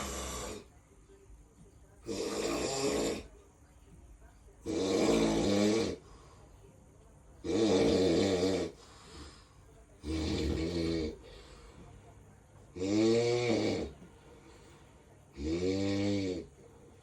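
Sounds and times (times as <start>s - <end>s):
loud snoring: 0.0s - 0.7s, 2.1s - 3.3s, 4.6s - 6.0s, 7.4s - 8.8s, 10.0s - 11.3s, 12.7s - 14.0s, 15.4s - 16.5s.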